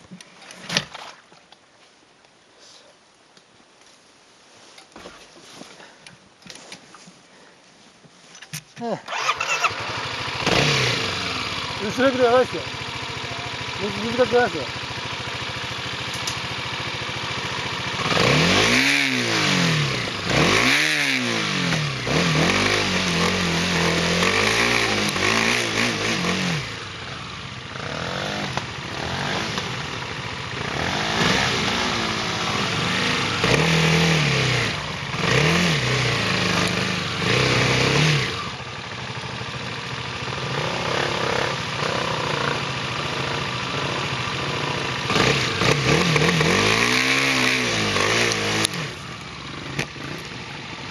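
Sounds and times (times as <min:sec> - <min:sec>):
vehicle engine revving hard: 0:09.1 - 0:11.9, 0:17.9 - 0:26.9, 0:27.7 - 0:29.9, 0:30.6 - 0:38.6, 0:40.3 - 0:49.0.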